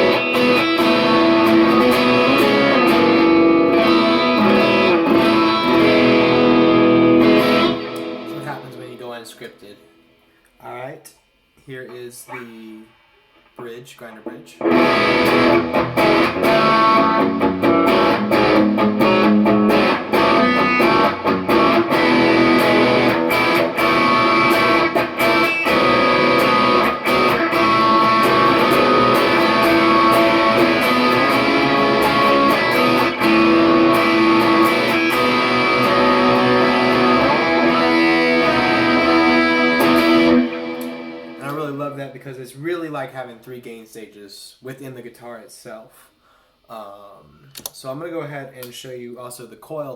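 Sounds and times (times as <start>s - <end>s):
electric guitar notes and chords: 0.0s - 9.2s, 14.6s - 41.8s.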